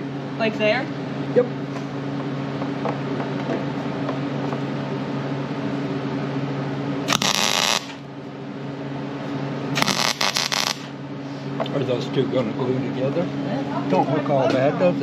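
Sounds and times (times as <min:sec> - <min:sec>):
steady machine hum: 0:00.0 - 0:15.0
welding arc hissing and crackling: 0:07.1 - 0:08.0, 0:09.8 - 0:11.0.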